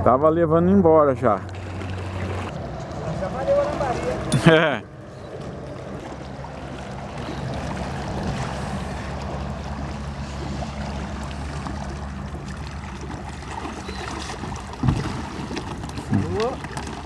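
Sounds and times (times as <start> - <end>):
river water: 0.0 - 17.0
wind: 0.0 - 17.0.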